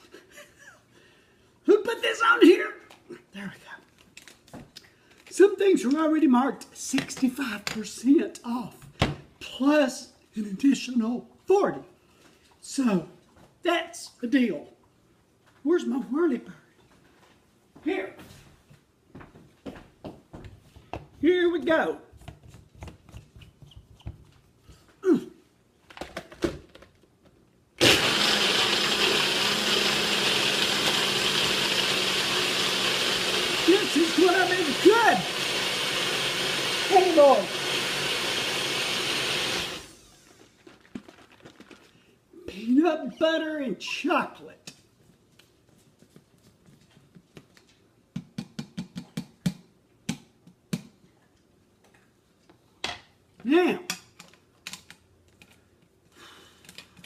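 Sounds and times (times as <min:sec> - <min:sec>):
blender running: 0:27.8 - 0:40.4.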